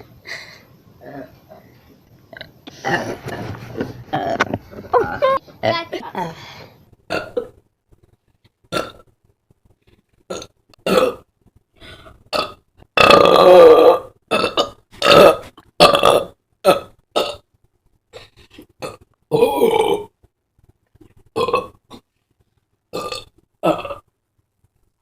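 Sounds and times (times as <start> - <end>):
woman burping loudly: 2.3 - 3.4, 4.1 - 6.4, 7.1 - 7.6, 8.7 - 9.1, 10.3 - 11.3, 12.3 - 17.4, 18.8 - 20.2, 21.4 - 22.1, 22.9 - 24.1.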